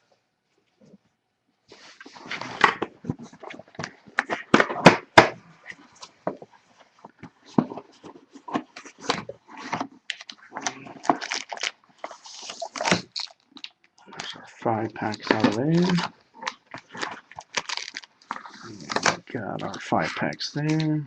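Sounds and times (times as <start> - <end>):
packaging crinkling and rustling: 1.8 - 21.0
cardboard tearing: 8.6 - 13.4, 15.0 - 19.2.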